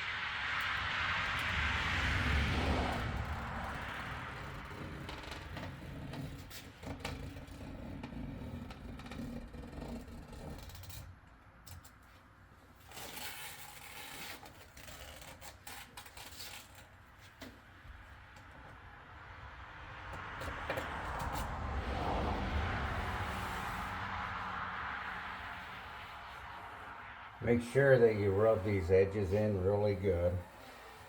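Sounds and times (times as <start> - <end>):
tool scraping on window glass: 0.6 - 12.0, 12.8 - 18.8, 20.0 - 31.0
rushing noise: 19.4 - 30.3.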